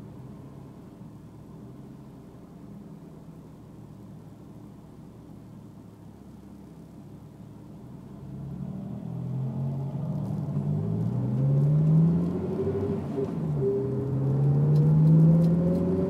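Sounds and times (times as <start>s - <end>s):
car engine accelerating: 7.9s - 16.0s.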